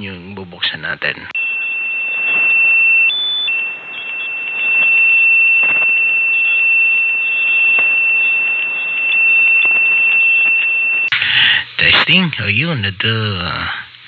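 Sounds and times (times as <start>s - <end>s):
faint crackles: 0.0s - 14.0s
radio static hiss: 0.0s - 14.0s
high carrier whistle: 1.4s - 11.1s.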